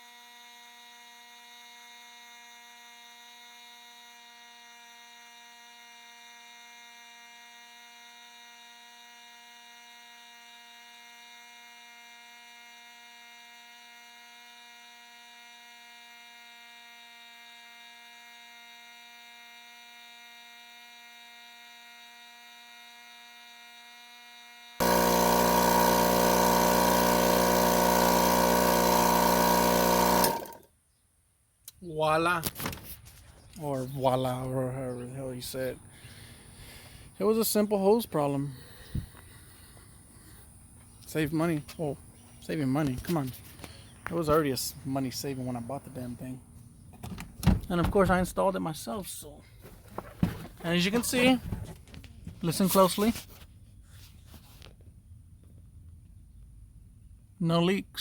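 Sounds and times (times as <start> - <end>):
air compressor buzzing: 24.8 - 30.7.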